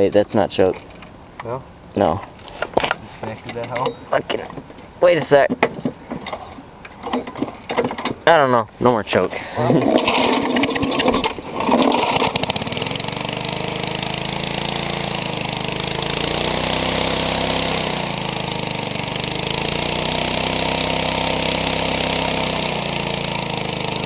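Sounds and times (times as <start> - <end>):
lawn mower engine running: 9.7 - 24.0.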